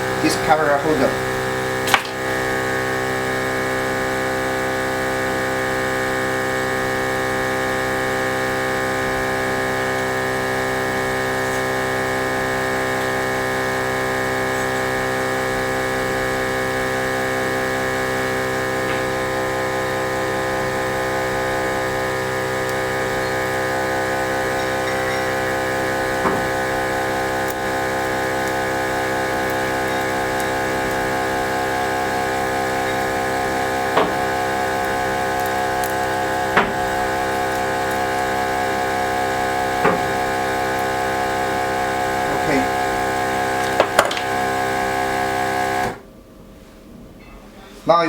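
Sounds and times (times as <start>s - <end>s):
machine humming: 0.0s - 46.2s.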